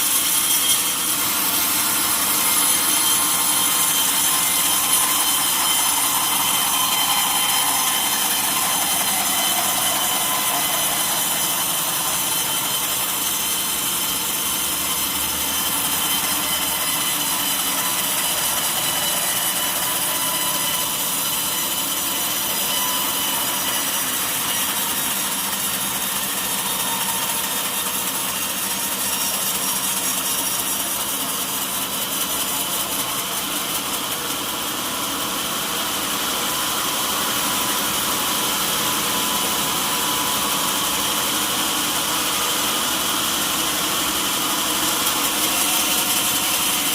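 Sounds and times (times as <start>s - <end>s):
saw cutting log with high whine: 0.0s - 46.9s.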